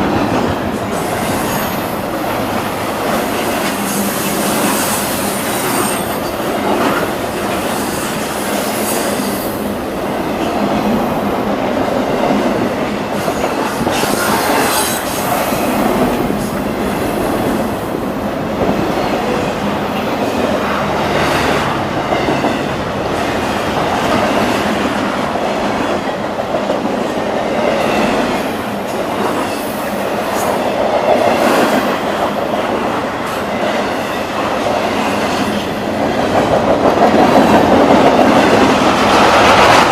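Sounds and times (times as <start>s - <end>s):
train wheel squeal: 0.9s - 1.9s, 3.4s - 7.0s, 13.2s - 15.9s.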